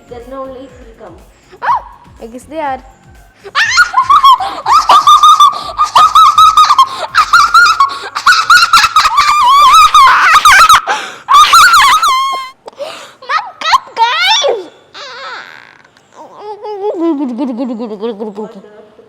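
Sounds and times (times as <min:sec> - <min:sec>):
child shrieking with laughter: 0:01.6 - 0:02.0, 0:03.5 - 0:12.6.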